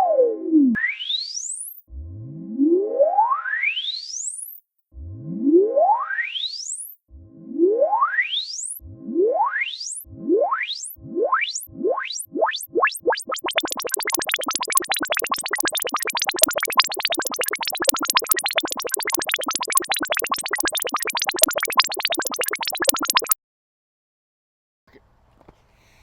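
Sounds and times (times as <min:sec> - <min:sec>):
rising electronic pitch sweep: 0:09.0 - 0:23.4.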